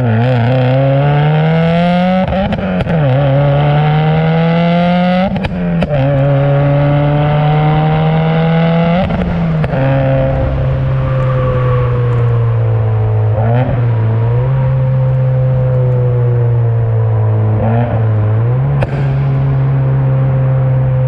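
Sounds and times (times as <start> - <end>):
car engine accelerating: 0.0 - 21.0
exhaust pops and crackles: 18.7 - 20.0.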